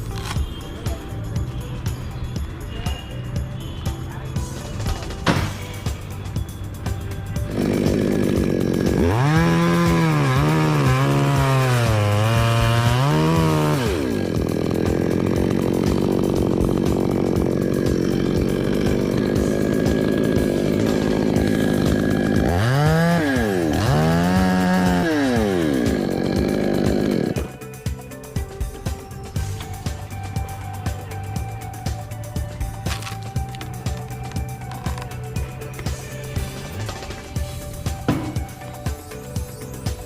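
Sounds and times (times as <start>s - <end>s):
chainsaw revving: 7.4s - 28.0s, 31.6s - 39.3s.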